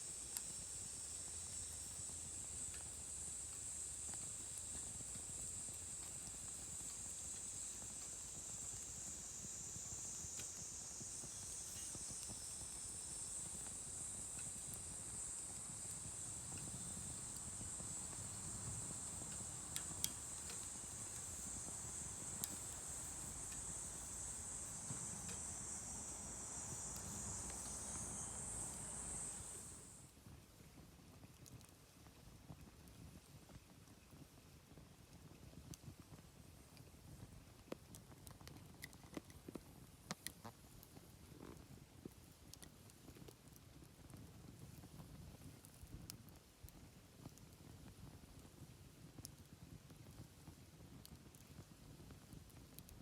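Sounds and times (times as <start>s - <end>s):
campfire popping: 0.0s - 30.0s
insects buzzing: 0.0s - 30.0s.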